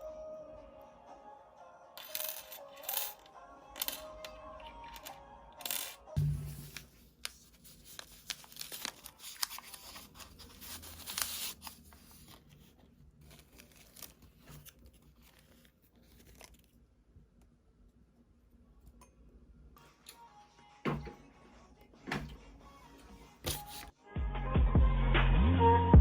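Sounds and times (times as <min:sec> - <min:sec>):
crinkling and tearing: 0:07.2 - 0:16.8.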